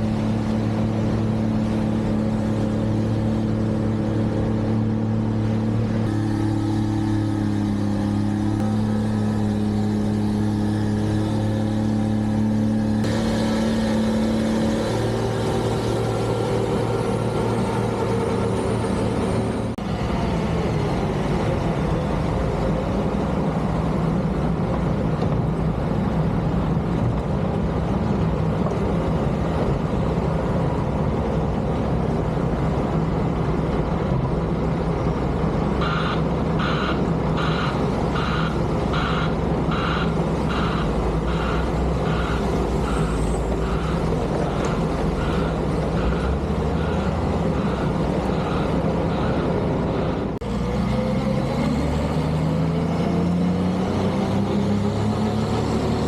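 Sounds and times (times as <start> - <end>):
diesel engines rumbling: 0.0 - 56.0
reversing alarm beeping: 35.8 - 44.1.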